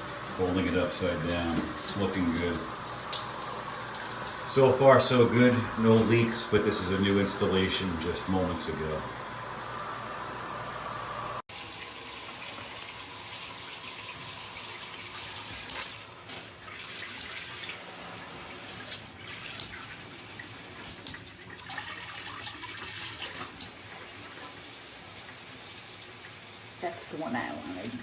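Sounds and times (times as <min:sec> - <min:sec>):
shower head spraying water: 0:00.0 - 0:11.4.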